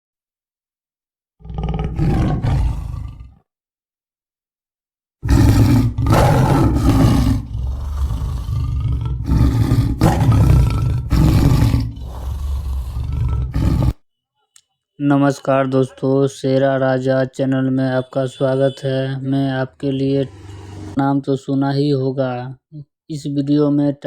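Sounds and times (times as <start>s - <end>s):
tiger growling and roaring: 1.4s - 3.5s, 5.2s - 14.0s.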